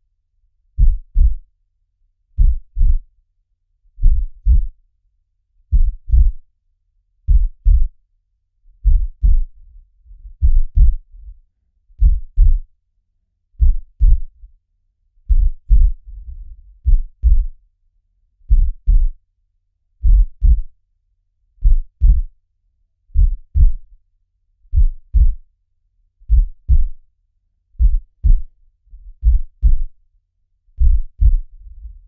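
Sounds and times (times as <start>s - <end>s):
slow heartbeat thumps: 0.8s - 1.4s, 2.4s - 3.1s, 4.0s - 4.8s, 5.7s - 6.4s, 7.3s - 8.0s, 8.8s - 11.4s, 12.0s - 12.7s, 13.6s - 14.4s, 15.3s - 17.6s, 18.5s - 19.2s, 20.0s - 20.8s, 21.6s - 22.3s, 23.2s - 23.9s, 24.7s - 25.4s, 26.2s - 27.0s, 27.8s - 30.0s, 30.8s - 32.0s
faint low whoosh: 15.3s - 17.4s, 30.8s - 32.0s.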